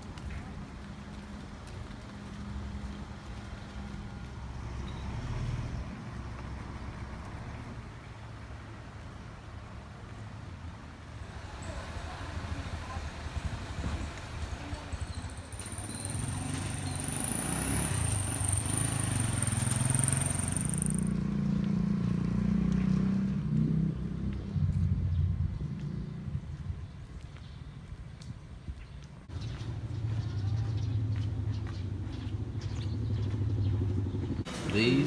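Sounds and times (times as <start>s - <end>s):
vehicle engine running: 11.3s - 22.4s, 29.3s - 35.0s.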